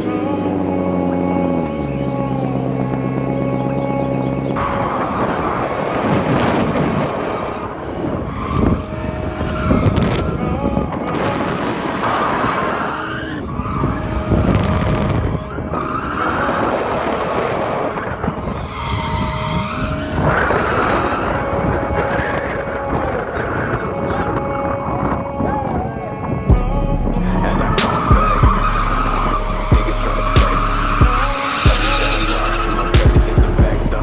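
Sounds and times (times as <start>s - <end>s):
tires screeching: 0.0s - 34.0s
car engine revving hard: 27.0s - 34.0s.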